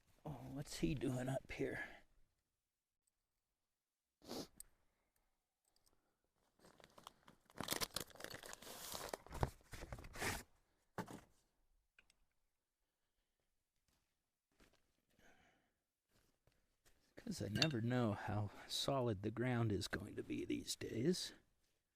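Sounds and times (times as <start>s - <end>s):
rustling and crinkling: 6.4s - 11.5s.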